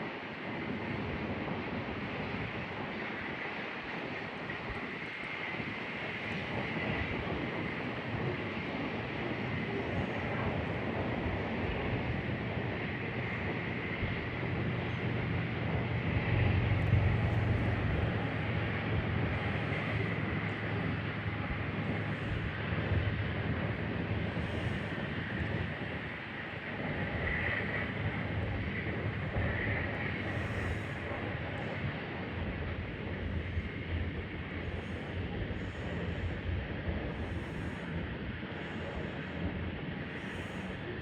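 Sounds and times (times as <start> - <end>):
train wheels rumbling on rails: 0.0 - 41.0
low hum: 8.2 - 39.8.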